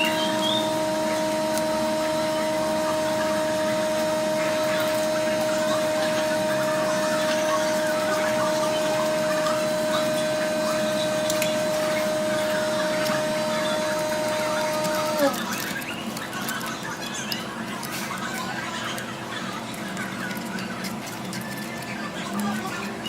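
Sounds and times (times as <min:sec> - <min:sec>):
small electric tool motor: 0:00.0 - 0:15.7.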